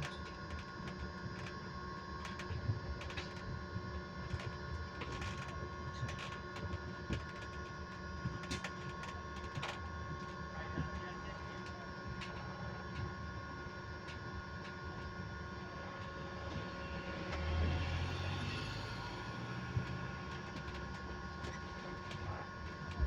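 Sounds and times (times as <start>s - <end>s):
steady electric motor whine: 0.0s - 23.0s
low road rumble: 15.7s - 23.0s.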